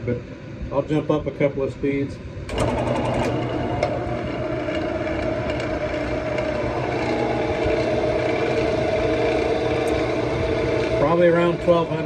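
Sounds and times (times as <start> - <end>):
wood lathe motor humming: 2.5 - 12.0.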